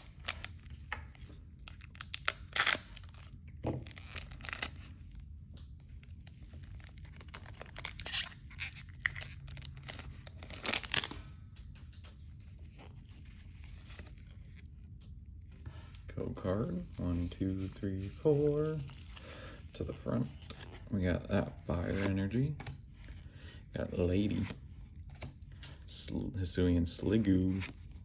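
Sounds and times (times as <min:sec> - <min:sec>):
foil wrapper tearing and crinkling: 0:01.7 - 0:04.8, 0:06.7 - 0:11.2.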